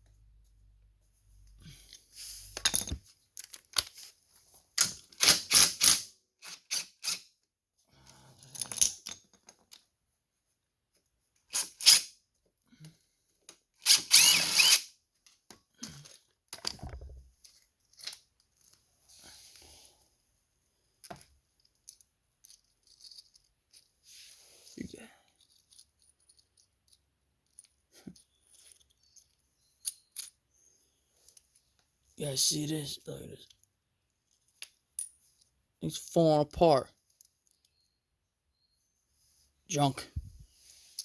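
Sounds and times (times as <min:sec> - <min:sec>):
tool noises on metal: 0:13.8 - 0:14.9.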